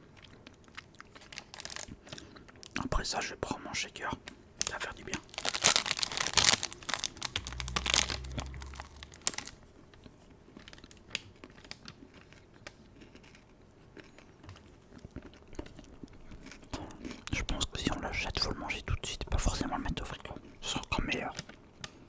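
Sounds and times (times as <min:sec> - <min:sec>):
plastic wrapper crinkling: 0:01.0 - 0:03.2, 0:04.6 - 0:09.6.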